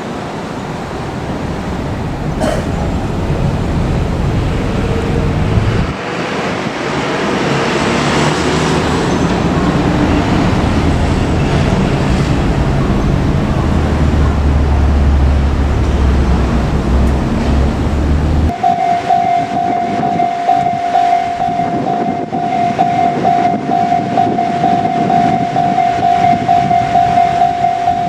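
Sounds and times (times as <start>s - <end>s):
low drone: 0.0s - 18.8s
freight train rumbling: 0.0s - 28.0s.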